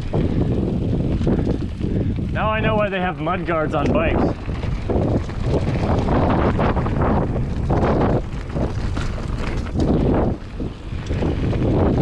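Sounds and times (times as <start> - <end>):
mountain bike rumbling and rattling: 0.0 - 12.0
wind buffeting microphone: 0.0 - 12.0.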